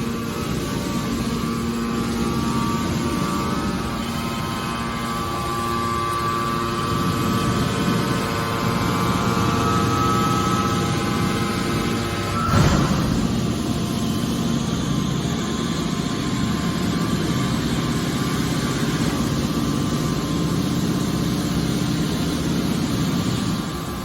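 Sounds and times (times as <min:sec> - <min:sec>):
motor and pump hum: 0:00.0 - 0:24.0
loud clunk: 0:12.0 - 0:14.1.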